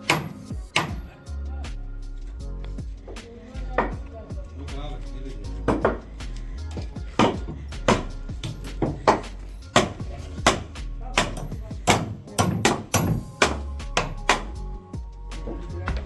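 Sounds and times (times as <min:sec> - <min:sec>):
hammer driving nails into wood: 0:00.0 - 0:01.2, 0:07.1 - 0:14.6.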